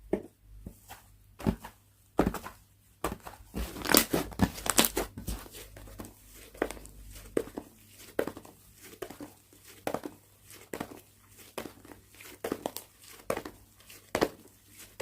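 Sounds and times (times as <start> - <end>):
slime popping and crackling: 3.6 - 5.1.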